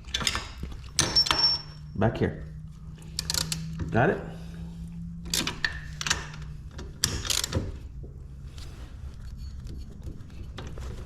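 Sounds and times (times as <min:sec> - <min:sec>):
metallic clicks and clunks of tools: 0:00.0 - 0:01.8, 0:03.0 - 0:03.9, 0:05.2 - 0:07.8.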